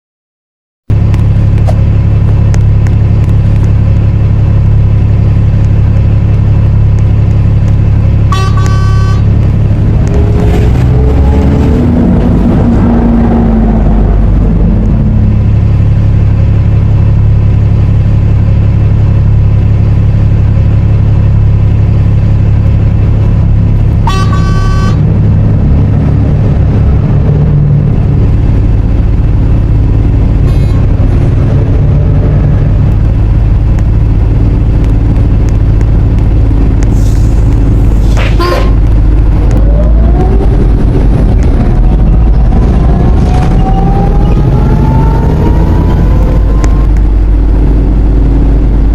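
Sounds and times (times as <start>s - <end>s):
bus engine humming: 0.8s - 48.9s
rising whine: 0.9s - 48.9s
bus horn honking: 8.2s - 9.6s, 24.0s - 25.3s, 38.0s - 38.9s.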